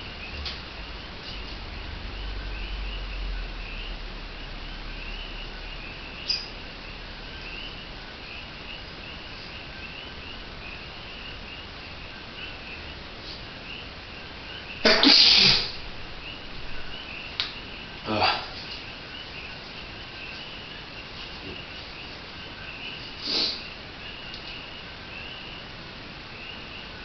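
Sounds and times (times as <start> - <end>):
soft repeated chirping: 0.0 - 14.9, 15.7 - 27.0
man sneezing: 14.8 - 15.8.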